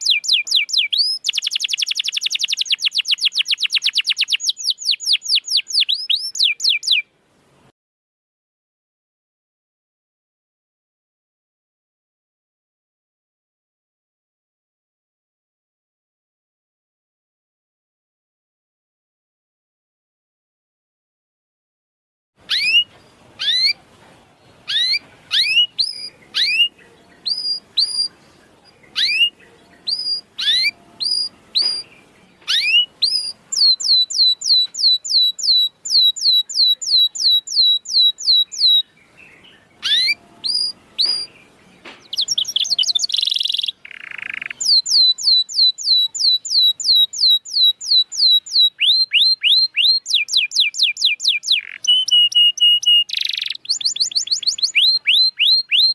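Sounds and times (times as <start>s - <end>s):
canary singing: 0.0s - 7.1s, 22.4s - 55.9s.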